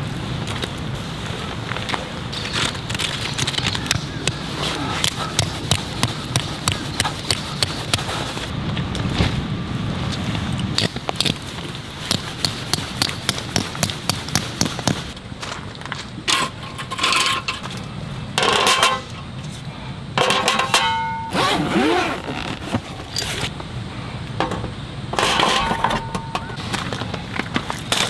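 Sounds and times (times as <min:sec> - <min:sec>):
clattering with ringing clinks: 0:20.2 - 0:21.6, 0:25.2 - 0:26.6.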